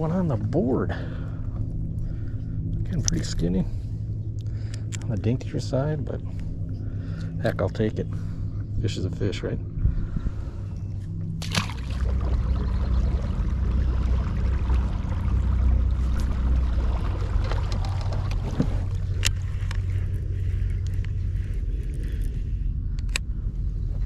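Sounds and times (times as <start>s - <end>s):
boat motor humming: 0.0s - 24.0s
wind noise: 9.6s - 10.7s
water noise: 11.4s - 22.4s
sharp clicks: 23.0s - 23.3s.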